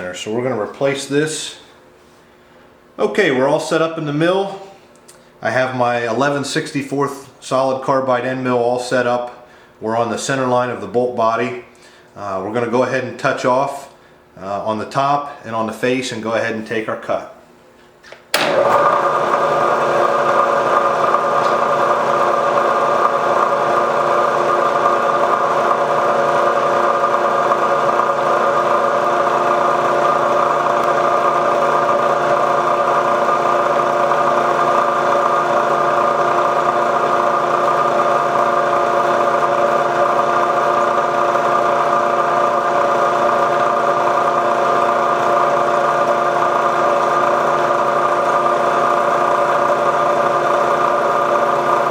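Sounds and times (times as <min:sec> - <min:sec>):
milling machine hum and whine: 0:18.4 - 0:51.9.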